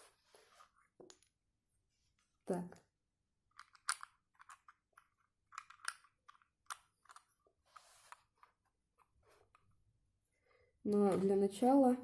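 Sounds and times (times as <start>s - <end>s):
plastic bricks clicking: 3.5s - 7.3s.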